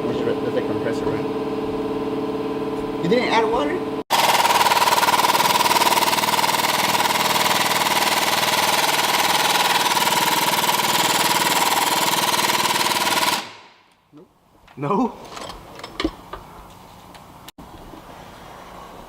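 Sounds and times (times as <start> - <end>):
machine rattling and humming: 4.1 - 13.7.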